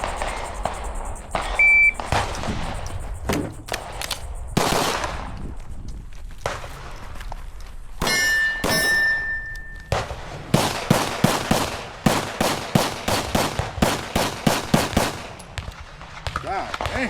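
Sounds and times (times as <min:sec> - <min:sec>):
shot timer beep: 0:01.6 - 0:02.0
pistol shots: 0:03.3 - 0:05.3, 0:08.0 - 0:17.0.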